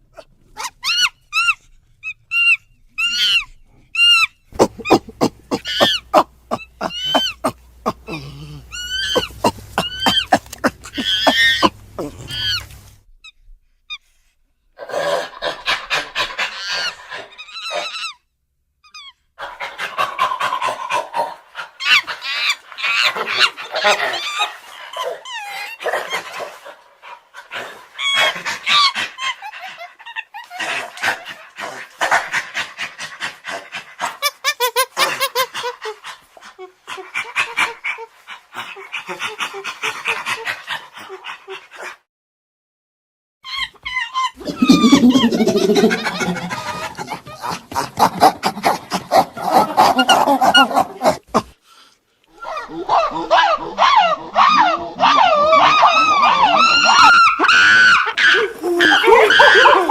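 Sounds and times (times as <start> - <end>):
ape-like vocal calls: 4.5 - 12.8, 44.4 - 51.2
harsh cries and chatter: 4.6 - 12.8, 44.4 - 47.0.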